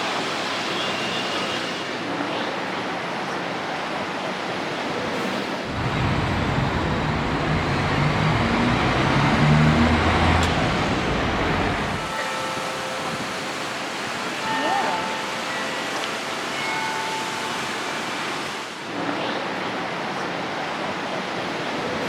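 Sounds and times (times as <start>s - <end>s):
city street traffic: 0.0s - 22.0s
vehicle engine passing close: 5.7s - 12.1s.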